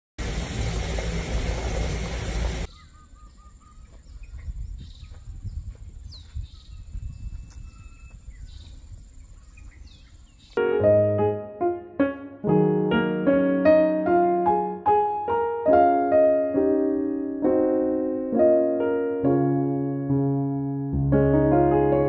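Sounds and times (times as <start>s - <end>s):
birds calling: 1.4s - 10.6s.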